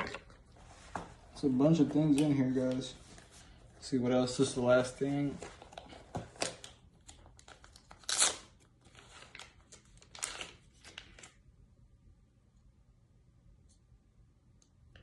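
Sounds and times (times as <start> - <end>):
packaging tearing: 6.4 - 11.4.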